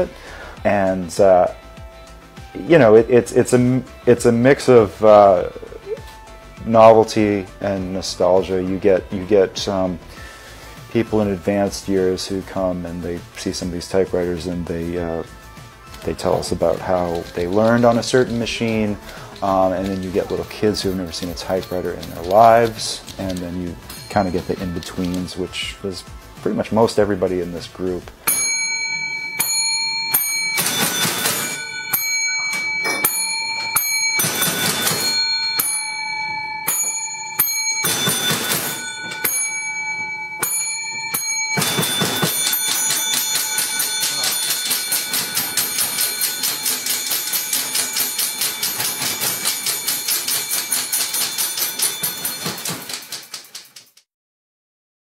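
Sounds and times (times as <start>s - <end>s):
typewriter carriage-return bells: 15.9s - 25.5s, 28.3s - 54.0s
typewriter key clatter: 41.6s - 54.0s.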